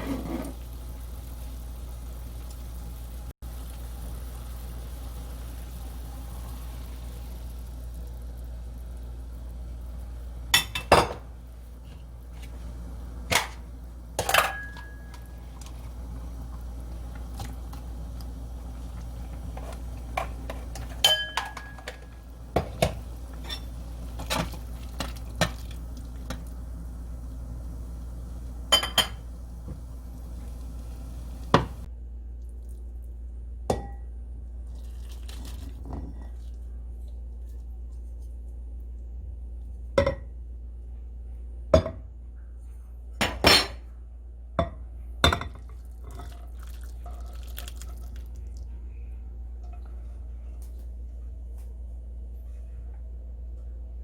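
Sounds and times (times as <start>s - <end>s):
steady low hum: 0.0s - 32.1s
utensils clinking against dishes: 14.2s - 15.4s, 20.2s - 22.2s, 23.4s - 23.8s.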